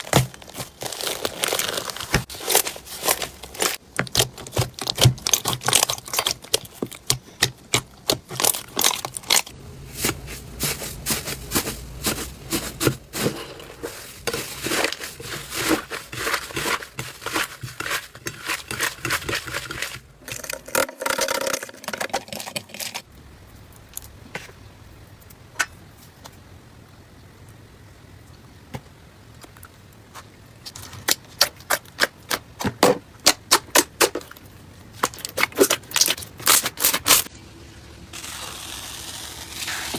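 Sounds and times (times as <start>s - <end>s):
slime crackling and popping: 0.0s - 9.5s.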